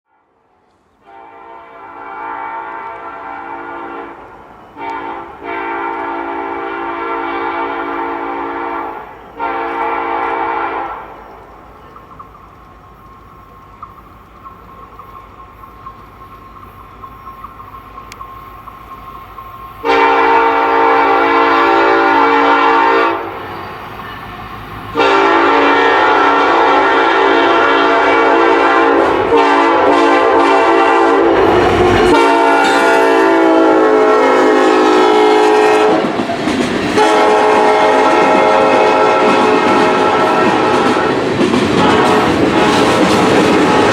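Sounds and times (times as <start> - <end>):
low engine and rail rumble: 0.1 - 43.9
locomotive air horn blasts: 1.0 - 11.1, 19.8 - 23.3, 24.9 - 36.1, 37.0 - 42.9.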